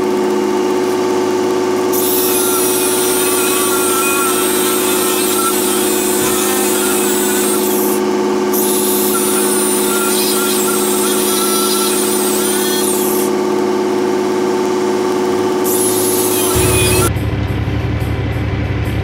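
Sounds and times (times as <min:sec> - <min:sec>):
machine whine: 0:00.0 - 0:19.0
deep hum: 0:13.6 - 0:19.0.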